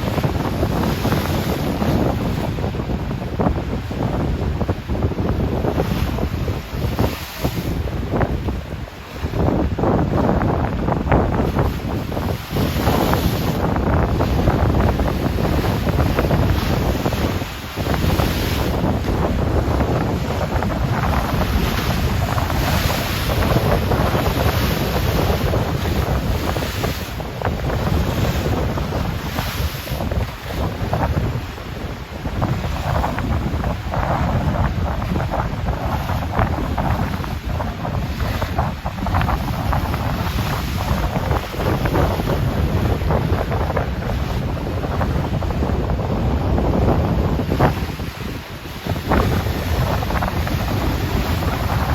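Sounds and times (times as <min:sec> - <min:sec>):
choppy ocean waves churning: 0:00.0 - 0:51.9
wind buffeting the microphone: 0:00.0 - 0:51.9.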